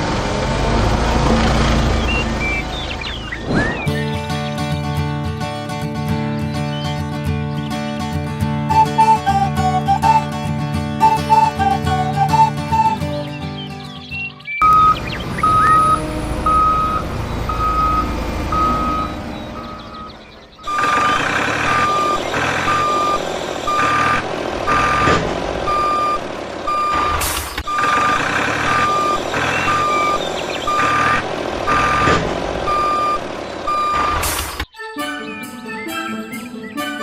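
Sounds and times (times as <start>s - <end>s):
engine noise: 0.0s - 5.2s, 14.6s - 34.7s
reversing alarm beeping: 11.0s - 13.1s, 14.6s - 34.6s.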